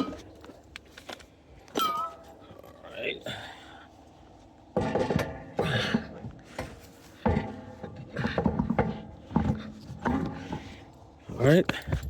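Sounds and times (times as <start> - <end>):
metal clunks and scrapes of wheel: 4.7 - 12.0.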